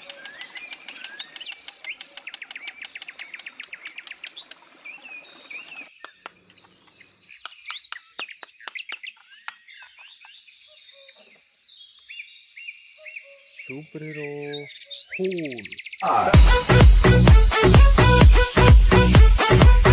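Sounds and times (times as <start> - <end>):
birds chirping and singing: 0.0 - 16.8.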